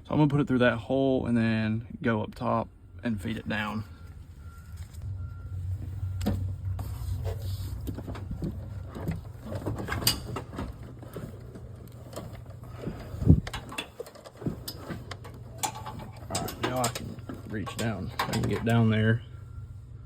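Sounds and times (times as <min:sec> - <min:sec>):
steady low hum: 0:00.0 - 0:20.0
cable clicks scrapes and knocks: 0:06.2 - 0:18.9.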